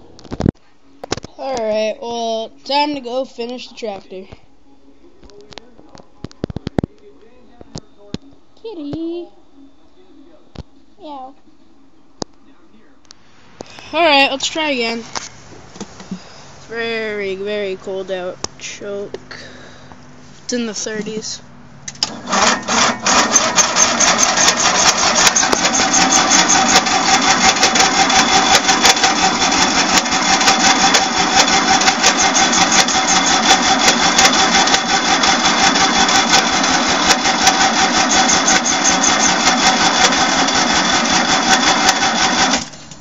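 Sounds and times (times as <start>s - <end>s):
electric starter cranking engine: 21.9s - 43.0s.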